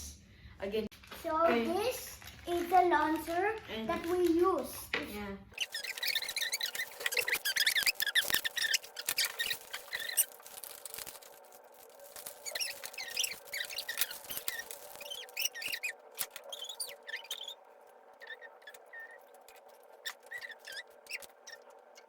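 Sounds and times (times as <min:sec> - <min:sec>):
plastic squeaking on plastic: 0:05.5 - 0:22.0.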